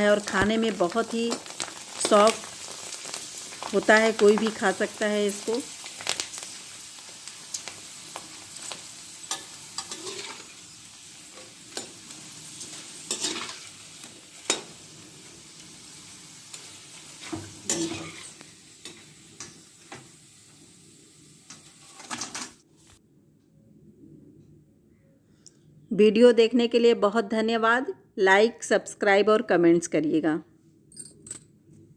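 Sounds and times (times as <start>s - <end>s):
food deep-frying in hot oil: 0.0s - 22.6s.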